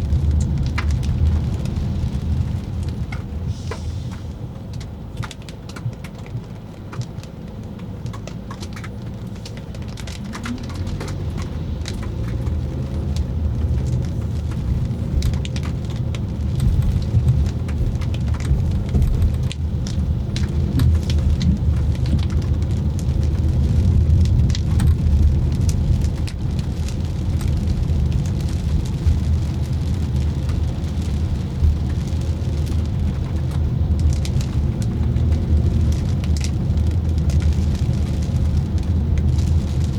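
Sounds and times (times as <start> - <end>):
car driving on wet road: 0.0 - 39.9
raindrops ticking on a car: 0.0 - 39.9.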